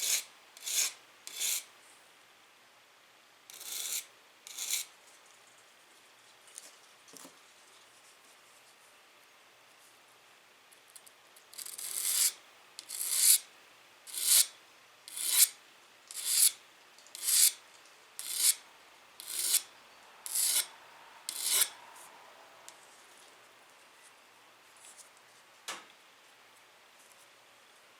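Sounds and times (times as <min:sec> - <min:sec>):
hand file scraping steel: 0:00.0 - 0:01.7, 0:03.5 - 0:04.9, 0:11.6 - 0:13.4, 0:14.1 - 0:14.5, 0:15.1 - 0:15.5, 0:16.1 - 0:17.6, 0:18.2 - 0:18.6, 0:19.2 - 0:19.7, 0:20.3 - 0:20.7, 0:21.3 - 0:21.8.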